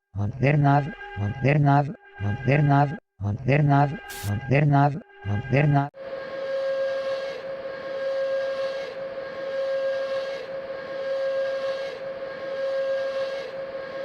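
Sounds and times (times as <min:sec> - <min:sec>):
hiss: 0:04.1 - 0:04.3.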